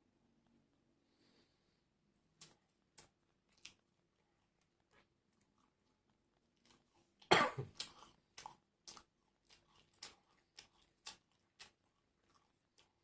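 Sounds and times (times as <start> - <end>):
chewing crunchy food: 2.3 - 13.0
person coughing: 7.3 - 7.8.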